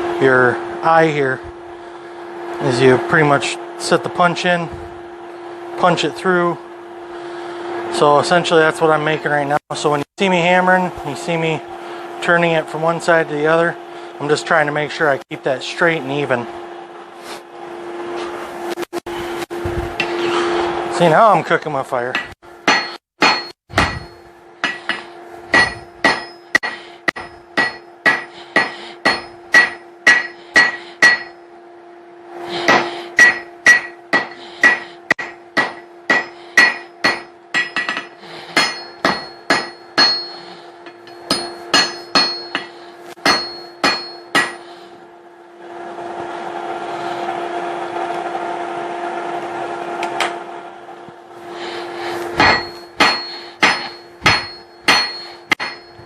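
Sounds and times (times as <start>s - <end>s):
hammer clanging on hot steel: 20.0s - 20.4s, 22.1s - 31.5s, 32.6s - 44.8s, 52.0s - 56.0s.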